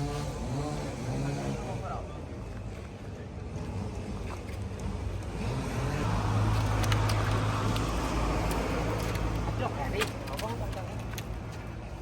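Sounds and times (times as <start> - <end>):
engine running: 0.0 - 10.9.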